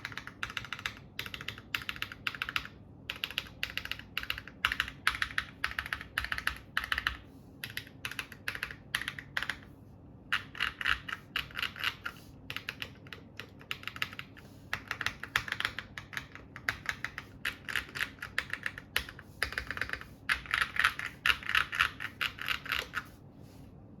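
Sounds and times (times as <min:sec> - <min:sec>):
typing on mechanical keyboard: 0:00.0 - 0:09.7, 0:10.3 - 0:23.0.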